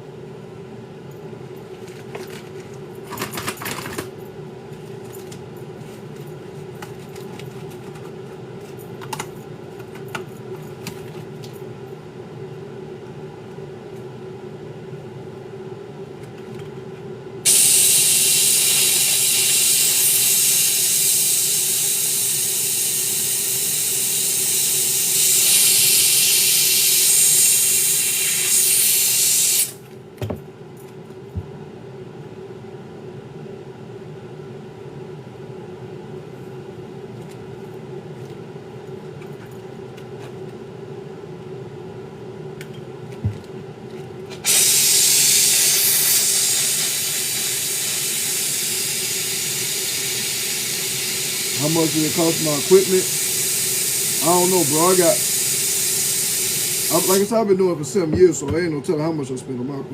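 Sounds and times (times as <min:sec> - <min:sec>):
loud steady hiss: 0:17.4 - 0:29.8, 0:44.4 - 0:59.3.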